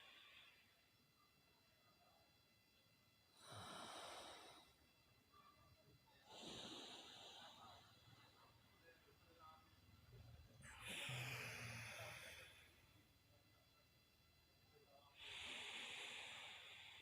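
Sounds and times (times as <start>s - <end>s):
deep nasal breaths: 3.4s - 4.8s, 6.2s - 8.0s, 10.6s - 12.9s, 15.2s - 17.0s.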